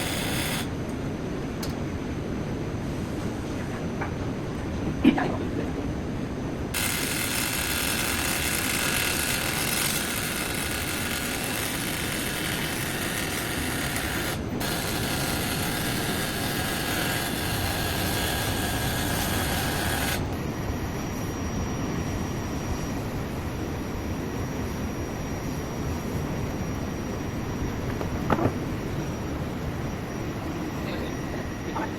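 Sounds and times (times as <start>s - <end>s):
welding arc hissing: 0.0s - 0.7s, 6.8s - 20.3s.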